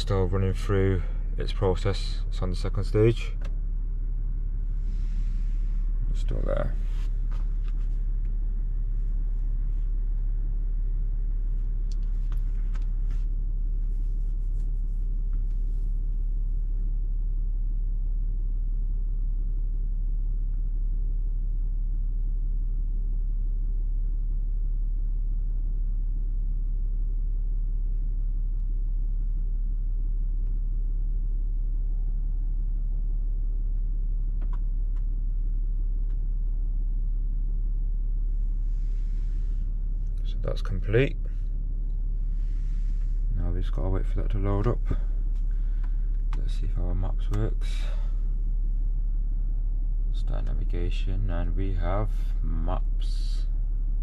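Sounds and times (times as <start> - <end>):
car engine idling: 0.0 - 54.0.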